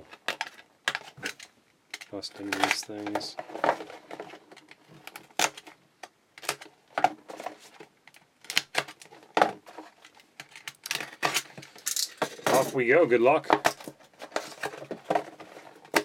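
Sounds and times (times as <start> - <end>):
card boxes and packs clicking: 0.0 - 16.0.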